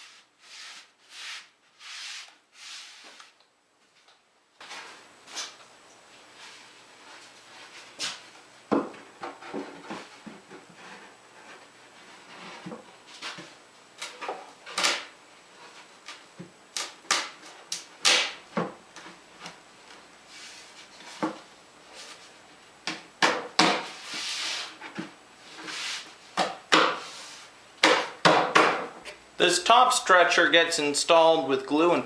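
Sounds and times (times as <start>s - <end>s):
wooden knocks and clunks: 8.7s - 10.6s.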